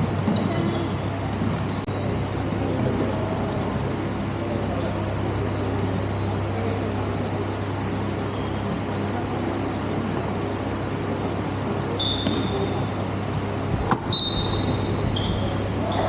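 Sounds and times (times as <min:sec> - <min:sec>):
faint short squeaks: 0:12.0 - 0:16.0.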